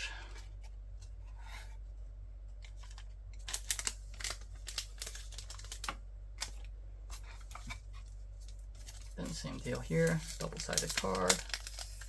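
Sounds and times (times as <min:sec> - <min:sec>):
plastic packaging crinkling: 0:02.6 - 0:12.0.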